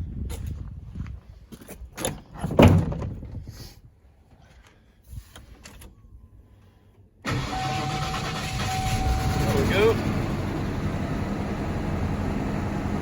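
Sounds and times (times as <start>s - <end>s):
truck door opening and shutting: 1.9s - 3.3s
engine starting and running: 7.2s - 13.0s.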